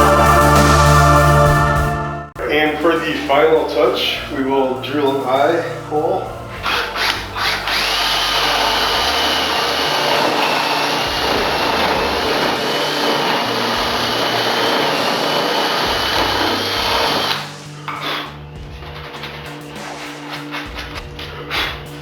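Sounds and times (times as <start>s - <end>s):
power drill whining into wood: 6.6s - 18.2s.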